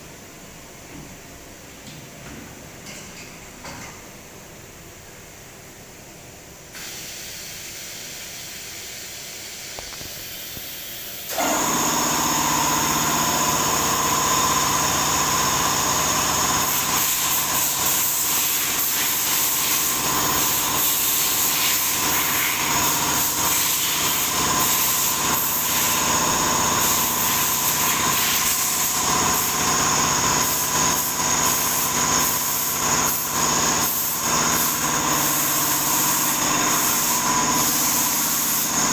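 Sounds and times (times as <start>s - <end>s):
machine hiss: 6.7s - 38.9s
milling machine whine: 11.3s - 17.9s.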